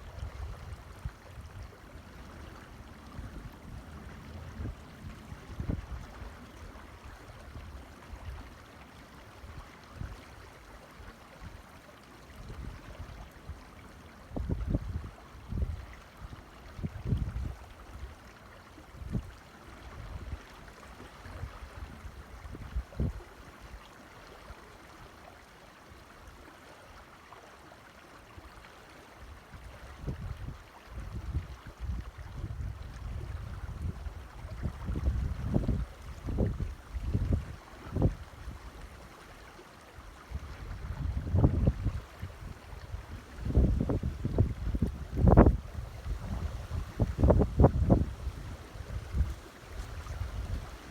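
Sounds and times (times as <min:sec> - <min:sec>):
creek water rushing: 0:00.0 - 0:50.9
wind buffeting microphone: 0:02.8 - 0:06.4, 0:14.4 - 0:15.8, 0:16.8 - 0:17.6, 0:30.0 - 0:38.8, 0:40.3 - 0:50.9.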